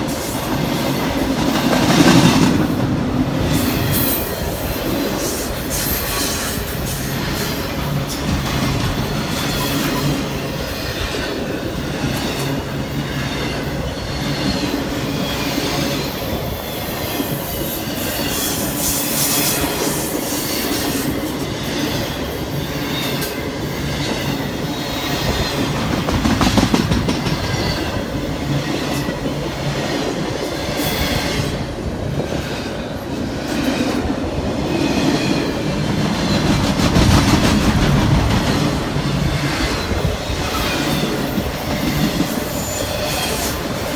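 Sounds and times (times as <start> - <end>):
freight train wheels clattering: 0.0 - 43.9.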